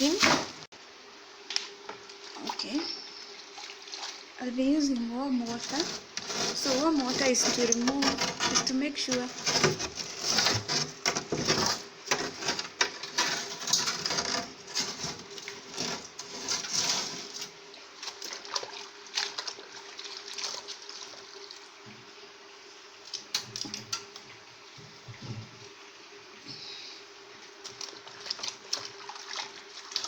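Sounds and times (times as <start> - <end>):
faint steady hum: 0.0 - 30.0
water splashing and trickling: 2.0 - 21.9, 27.4 - 30.0.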